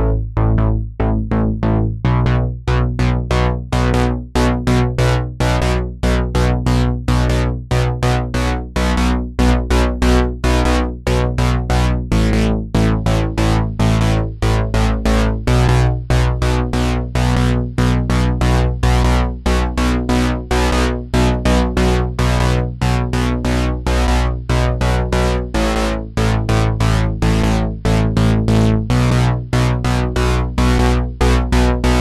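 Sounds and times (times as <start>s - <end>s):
synthesizer and keyboard music: 0.0s - 32.0s.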